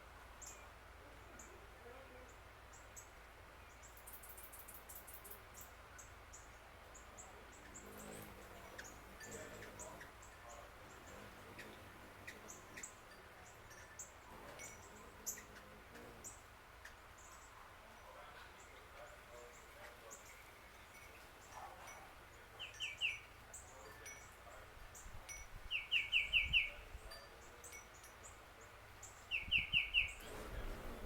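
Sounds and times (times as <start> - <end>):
bird song clear notes: 0.4 - 31.0
high bird chirps: 25.7 - 26.8, 29.0 - 31.0.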